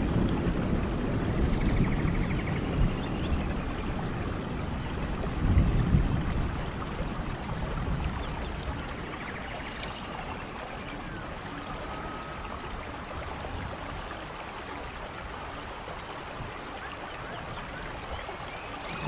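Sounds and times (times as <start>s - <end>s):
steady rain hiss: 0.0s - 19.0s.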